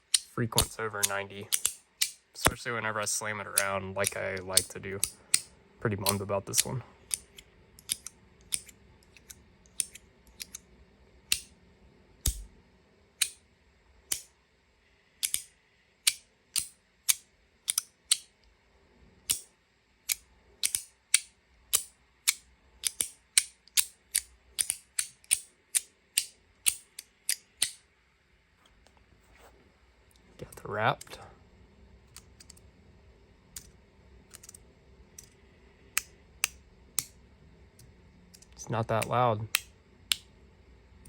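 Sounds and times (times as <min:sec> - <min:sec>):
metal clicks of fidget toy: 0:00.0 - 0:02.6, 0:03.5 - 0:10.6, 0:12.2 - 0:12.4, 0:15.2 - 0:18.3, 0:19.3 - 0:19.5, 0:20.1 - 0:27.8, 0:32.1 - 0:32.6, 0:34.3 - 0:34.6.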